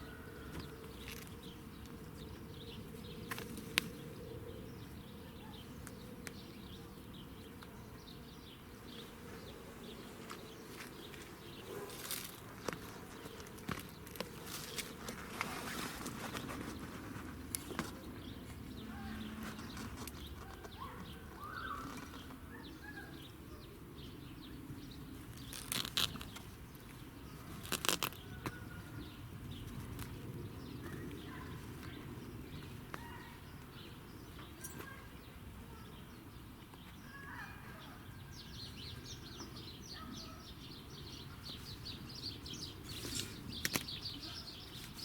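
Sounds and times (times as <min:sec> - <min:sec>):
faint bird chirps: 0:20.4 - 0:24.7.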